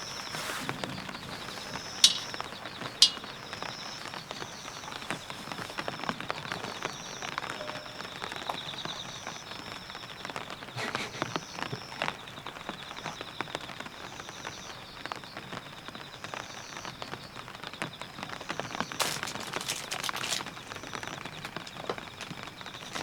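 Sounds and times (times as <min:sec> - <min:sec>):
rain falling on a tent: 0:00.0 - 0:23.0
sharp clicks: 0:02.0 - 0:02.4, 0:03.0 - 0:03.4.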